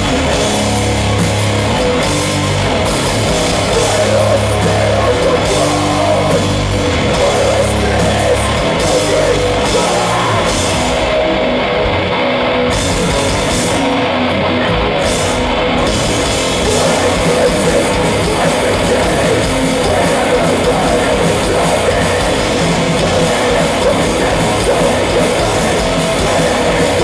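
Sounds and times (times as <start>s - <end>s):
drums and cymbals: 0.0s - 12.0s, 12.7s - 14.1s, 14.7s - 27.0s
bass guitar: 0.0s - 27.0s
distorted electric guitars: 0.0s - 27.0s.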